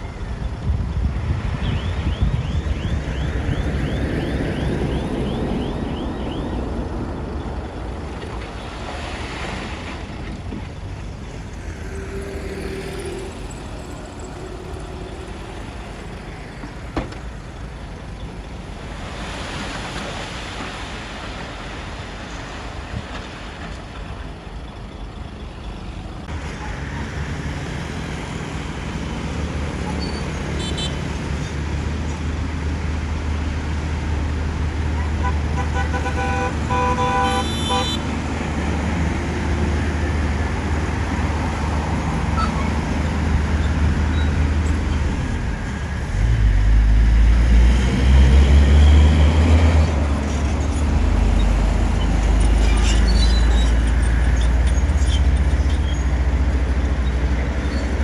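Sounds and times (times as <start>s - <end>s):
diesel engine rumbling: 0.0s - 58.0s
vehicle horn: 30.6s - 31.1s, 35.0s - 38.3s.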